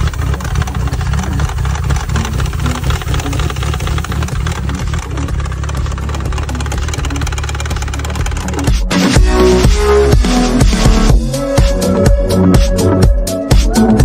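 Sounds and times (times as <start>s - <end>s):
rapid engine knock: 0.0s - 11.1s
outboard motor idling: 0.0s - 11.2s.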